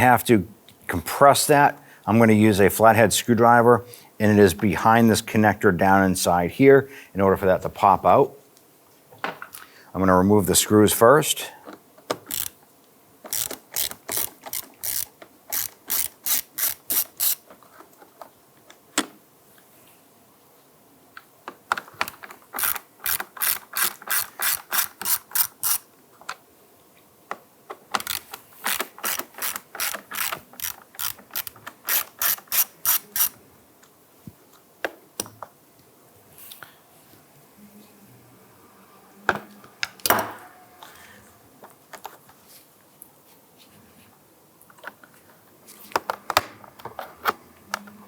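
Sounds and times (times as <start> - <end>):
hand ratchet clicking: 12.2 - 12.6, 13.3 - 17.4, 22.6 - 25.8, 28.0 - 33.4.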